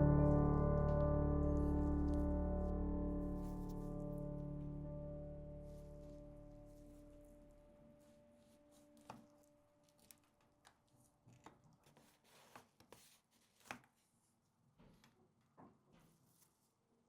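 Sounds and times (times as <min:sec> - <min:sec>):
music note: 0:00.0 - 0:07.6.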